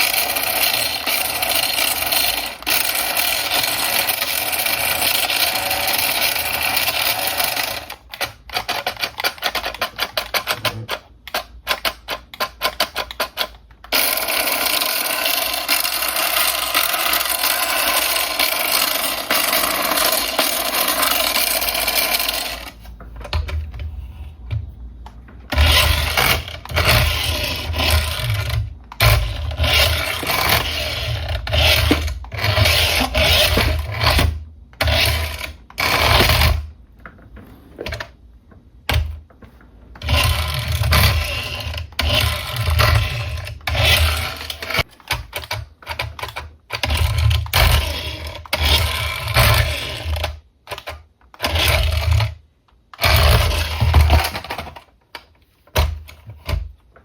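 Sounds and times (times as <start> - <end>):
toy car motor whirring: 0.0 - 22.9, 25.5 - 36.7, 40.0 - 45.4, 46.0 - 52.4, 53.0 - 54.8.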